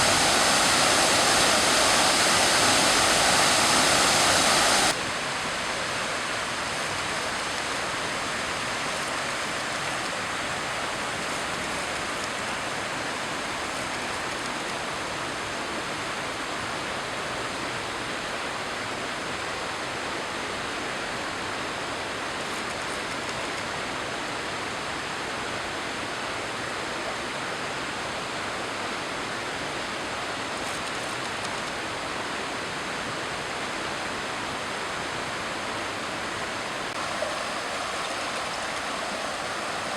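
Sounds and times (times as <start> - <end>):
waterfall rushing: 0.0 - 22.4, 31.9 - 39.9.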